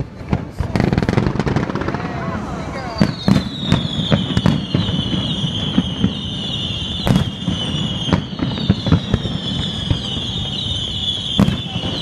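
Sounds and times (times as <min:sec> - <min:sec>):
fireworks bangs and crackles: 0:00.0 - 0:12.0
high falling whistle: 0:02.9 - 0:12.0.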